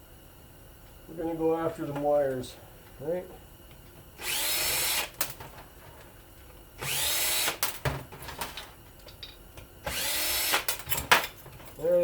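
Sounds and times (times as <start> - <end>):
power drill whining: 4.2 - 5.2, 6.8 - 7.7, 9.8 - 10.8.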